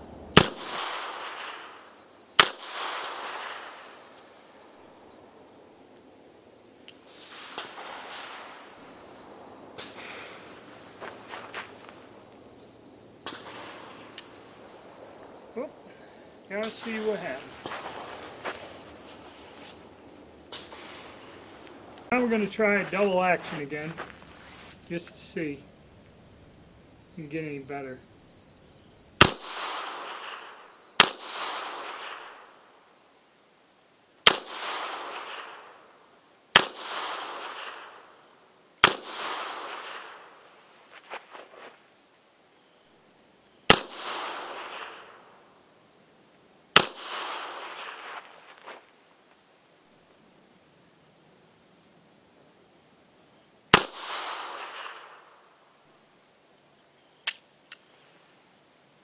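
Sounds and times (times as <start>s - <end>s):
revolver gunshot with echo: 0.3s - 1.7s, 2.4s - 3.8s, 29.2s - 30.4s, 31.0s - 32.4s, 34.3s - 35.7s, 43.7s - 45.2s, 46.8s - 48.0s, 53.7s - 55.2s.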